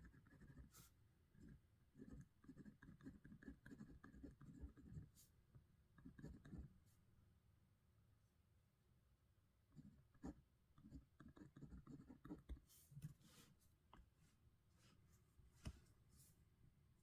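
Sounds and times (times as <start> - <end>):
pen scratching on paper: 1.4 - 5.1, 9.8 - 13.5.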